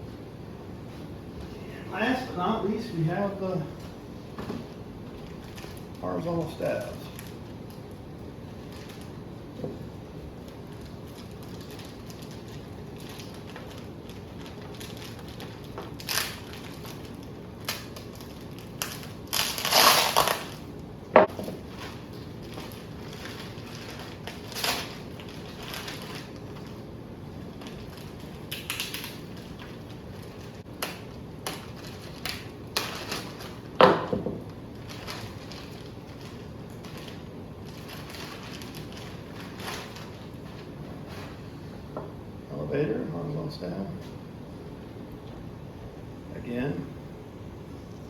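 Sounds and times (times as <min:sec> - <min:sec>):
packing material rustling: 0:04.6 - 0:20.8, 0:21.4 - 0:33.8, 0:34.6 - 0:41.8.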